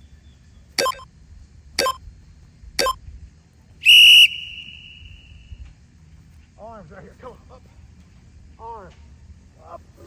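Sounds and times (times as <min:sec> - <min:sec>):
long high timer beep: 0:00.8 - 0:01.0, 0:01.8 - 0:02.0
short timer beeps: 0:00.8 - 0:01.1, 0:01.8 - 0:02.0.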